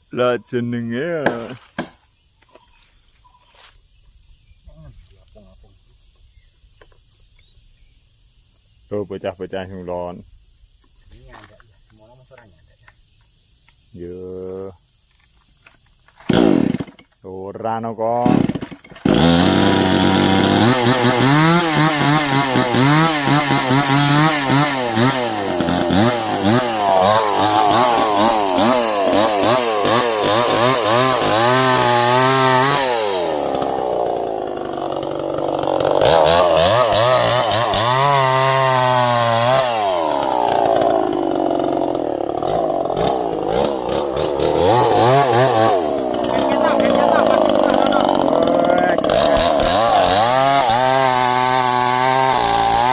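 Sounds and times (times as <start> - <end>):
chainsaw cutting timber: 16.2 - 17.1, 18.2 - 52.9.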